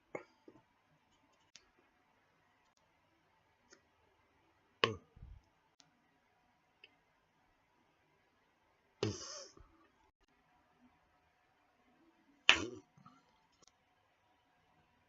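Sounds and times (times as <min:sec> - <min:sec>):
faint scattered clicks: 0:02.6 - 0:02.9.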